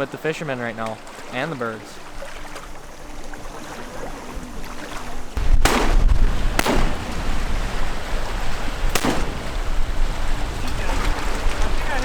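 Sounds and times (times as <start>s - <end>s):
wind buffeting microphone: 2.0s - 12.0s
loud sharp cracks: 5.4s - 7.3s, 8.9s - 9.9s.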